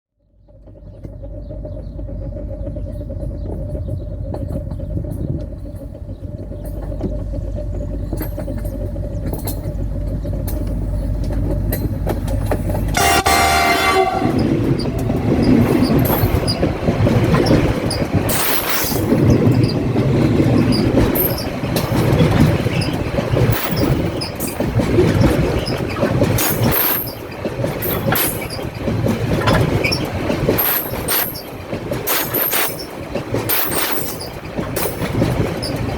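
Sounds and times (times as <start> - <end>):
freight train rumbling: 0.2 - 35.9
rapid wheel clatter: 0.4 - 35.9
train horn: 12.9 - 17.9
high wheel squeals: 13.0 - 19.9.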